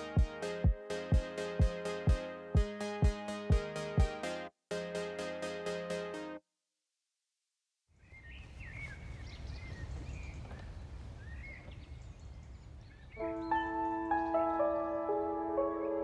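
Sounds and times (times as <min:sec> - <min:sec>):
electronic music: 0:00.0 - 0:06.4
outdoor background noise: 0:08.0 - 0:13.2
birds chirping: 0:08.0 - 0:15.4.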